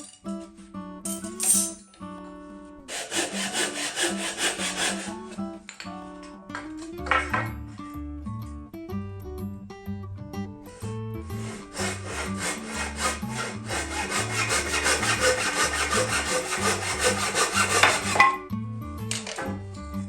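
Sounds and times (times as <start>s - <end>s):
background music: 0.0s - 20.0s
tool scraping wood: 2.9s - 5.5s, 11.2s - 18.4s.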